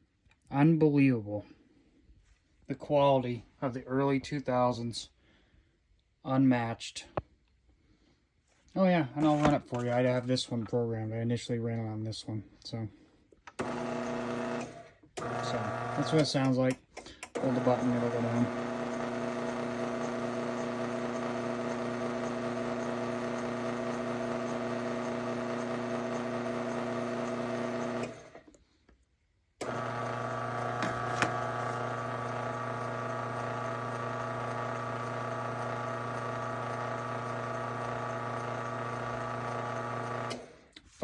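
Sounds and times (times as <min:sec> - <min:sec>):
garage door opener motor hum: 0:13.5 - 0:16.4, 0:17.4 - 0:28.5, 0:29.6 - 0:40.7.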